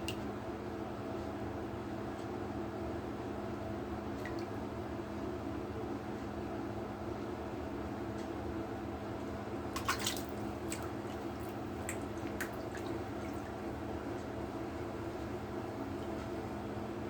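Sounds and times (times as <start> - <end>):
steady low hum: 0.0 - 17.0
water dripping and splashing: 4.2 - 4.5, 9.8 - 13.7.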